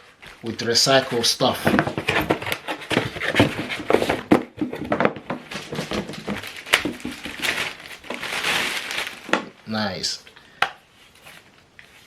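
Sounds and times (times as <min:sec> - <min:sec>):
cardboard and paper packaging handled: 0:00.0 - 0:09.6, 0:10.9 - 0:12.0.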